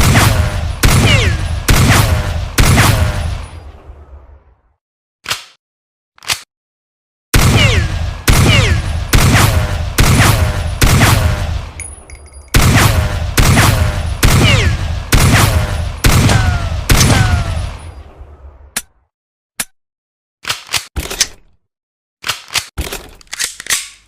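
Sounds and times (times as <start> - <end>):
pistol gunshots with ringing tail: 0.0 - 3.6, 7.4 - 11.8, 12.5 - 17.8.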